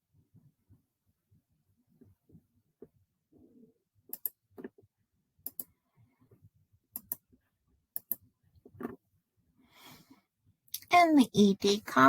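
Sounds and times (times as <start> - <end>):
quiet sharp clicks: 4.1 - 4.4, 5.4 - 5.7.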